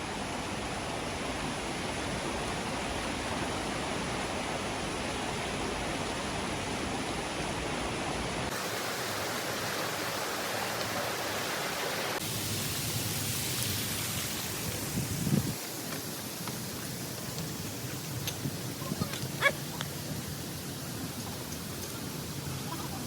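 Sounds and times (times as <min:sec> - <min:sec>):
waterfall rushing: 0:05.6 - 0:23.0.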